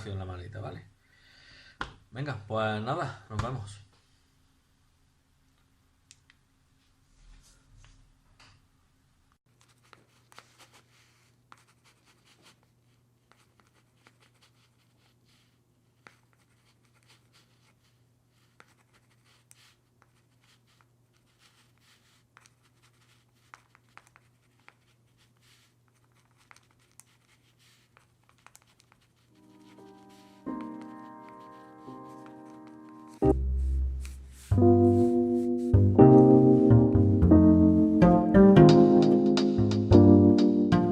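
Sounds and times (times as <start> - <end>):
faint clicks and scratches: 9.5 - 29.9.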